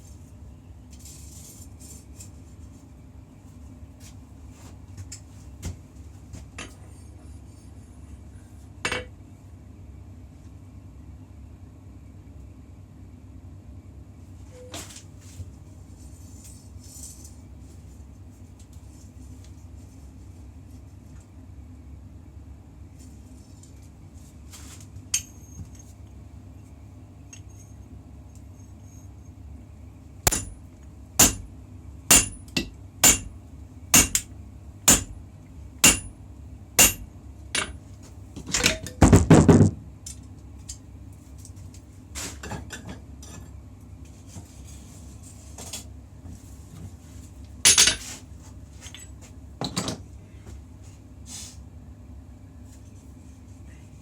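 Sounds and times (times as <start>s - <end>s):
hammer striking steel on anvil: 30.3s - 30.6s, 31.2s - 31.5s, 32.1s - 33.3s, 34.0s - 34.3s, 34.9s - 35.2s, 35.8s - 36.2s, 36.8s - 37.8s.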